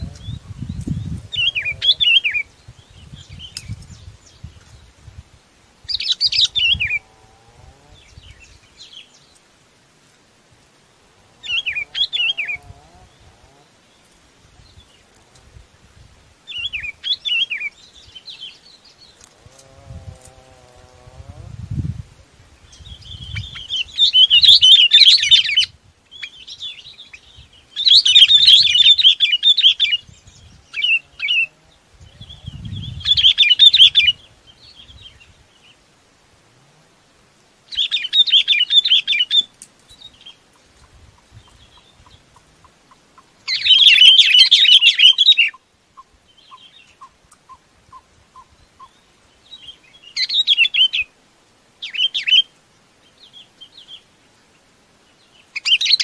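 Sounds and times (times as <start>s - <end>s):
bulbul chattering song: 0.0s - 3.8s, 37.7s - 49.0s.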